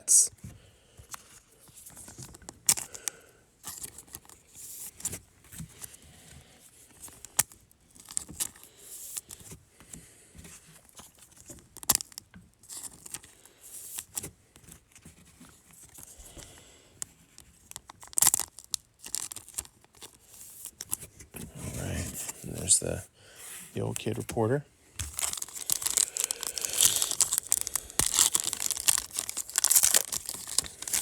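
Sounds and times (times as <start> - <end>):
foil wrapper tearing and crinkling: 2.0 - 4.4, 11.4 - 13.3, 17.4 - 21.0, 25.0 - 31.0
cards being handled: 17.3 - 31.0.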